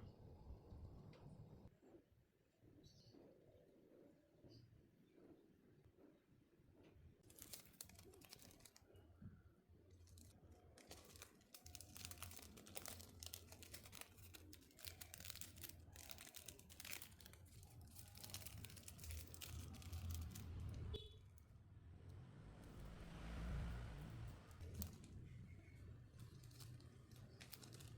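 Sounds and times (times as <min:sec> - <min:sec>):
thin sheet crinkling and rustling: 0:07.2 - 0:09.1, 0:09.9 - 0:21.2, 0:23.6 - 0:27.9.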